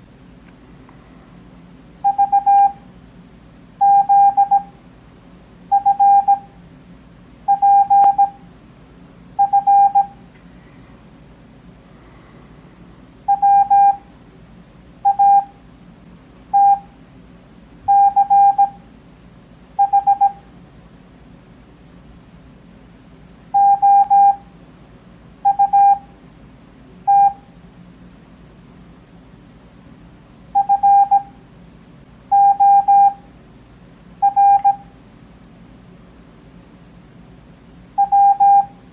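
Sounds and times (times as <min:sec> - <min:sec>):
faint steady hum: 0:00.0 - 0:38.9
morse code beeps: 0:02.0 - 0:02.8, 0:03.8 - 0:04.7, 0:05.7 - 0:06.5, 0:07.5 - 0:08.4, 0:09.4 - 0:10.2, 0:13.3 - 0:14.0, 0:15.0 - 0:15.6, 0:16.5 - 0:16.9, 0:17.9 - 0:18.8, 0:19.8 - 0:20.4, 0:23.6 - 0:24.4, 0:25.4 - 0:26.1, 0:27.1 - 0:27.4, 0:30.6 - 0:31.3, 0:32.3 - 0:33.2, 0:34.2 - 0:34.9, 0:38.0 - 0:38.8.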